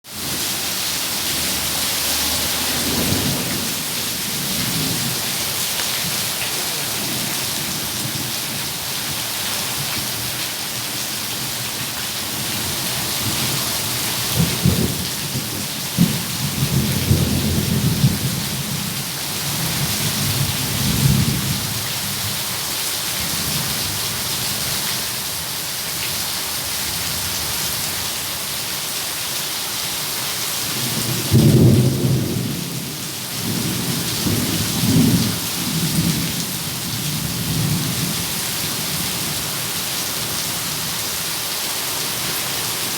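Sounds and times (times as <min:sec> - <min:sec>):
heavy rain falling: 0:00.0 - 0:42.9
thunder rumbling: 0:00.2 - 0:08.6
close thunder cracks: 0:01.3 - 0:05.3.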